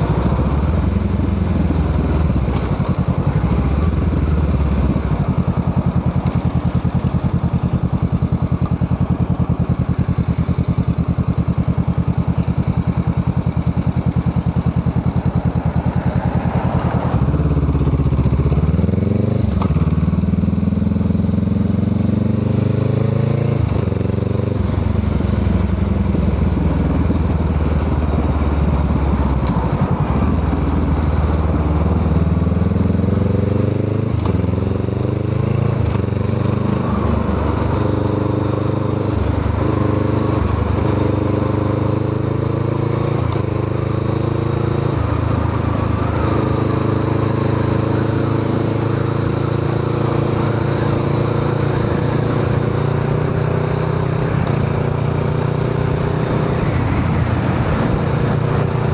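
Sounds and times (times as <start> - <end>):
motorcycle engine revving: 0.0 - 58.9.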